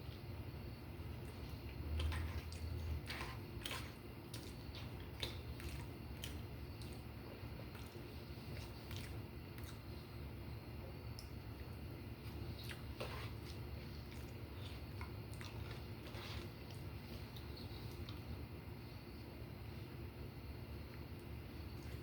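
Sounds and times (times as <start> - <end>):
close-up chewing: 1.1 - 10.2, 11.0 - 18.5.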